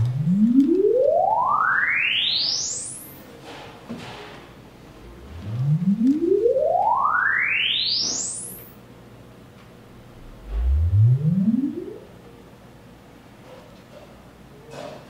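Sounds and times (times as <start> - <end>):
bass-range sweep: 0.0 - 0.6, 4.9 - 7.6, 10.0 - 12.3
sine tone test sweeps: 0.0 - 3.2, 4.9 - 8.8, 10.1 - 12.3.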